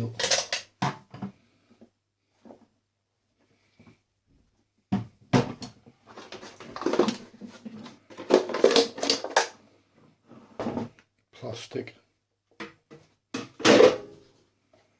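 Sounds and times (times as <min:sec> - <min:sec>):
plastic and metal pieces rattling: 0:00.1 - 0:00.7, 0:06.1 - 0:09.6.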